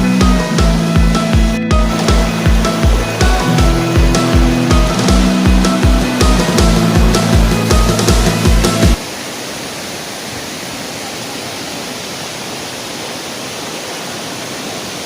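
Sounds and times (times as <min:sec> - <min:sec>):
music with heavy beat: 0:00.0 - 0:09.0
waterfall rushing: 0:00.0 - 0:15.0.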